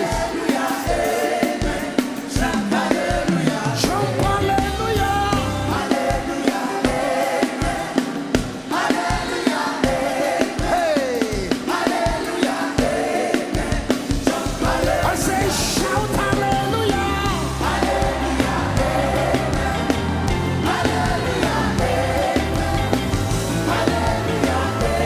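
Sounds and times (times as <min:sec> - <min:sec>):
gospel singing over a beat: 0:00.0 - 0:25.0.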